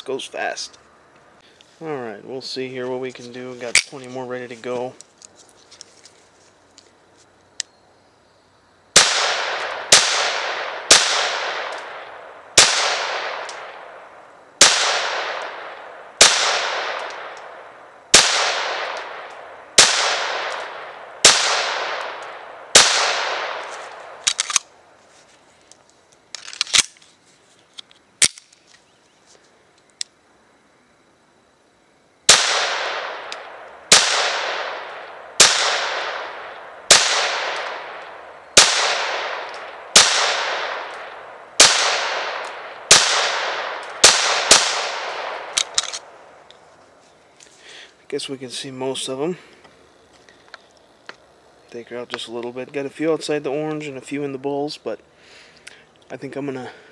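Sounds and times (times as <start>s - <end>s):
pistol shots echoing: 9.0s - 24.4s, 32.3s - 46.2s.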